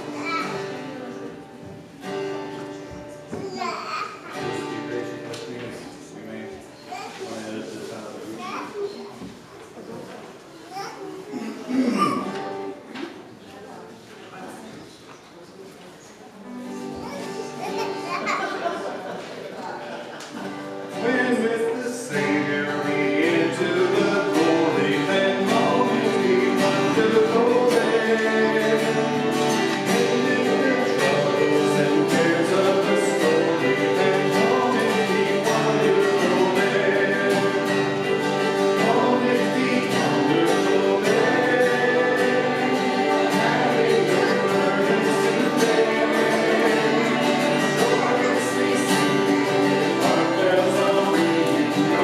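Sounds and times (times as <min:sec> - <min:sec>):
guitar accompaniment: 0:00.0 - 0:09.3, 0:10.7 - 0:13.3, 0:16.4 - 0:52.0
group of voices singing: 0:20.8 - 0:52.0.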